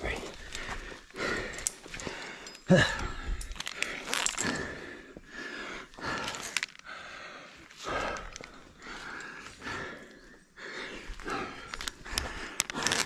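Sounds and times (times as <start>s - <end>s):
person breathing hard: 0.0s - 13.0s
person grunting: 2.7s - 3.2s.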